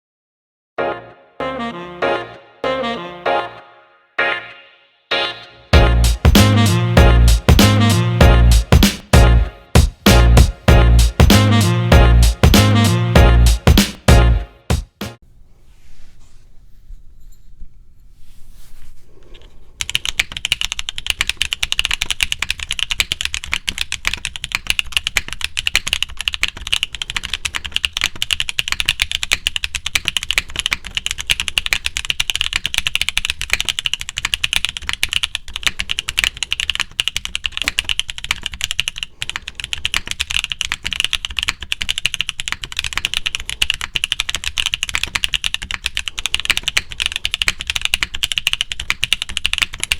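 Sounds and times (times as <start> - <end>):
fast mechanical keyboard typing: 19.8 - 49.9.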